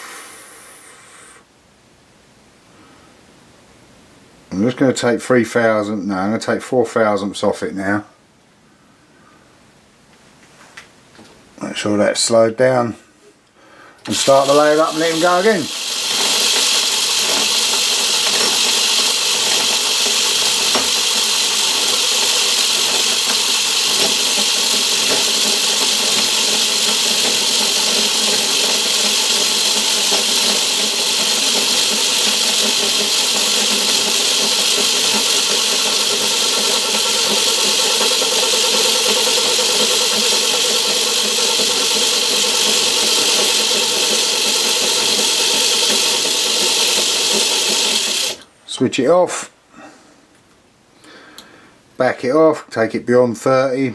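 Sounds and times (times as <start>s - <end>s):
lathe running: 14.0s - 48.5s.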